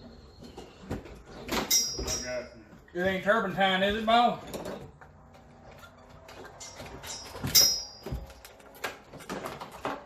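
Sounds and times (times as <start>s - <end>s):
tools handling clicks and knocks: 1.4s - 2.4s, 5.8s - 10.0s
sharp metallic clink: 1.6s - 2.5s, 6.6s - 8.0s.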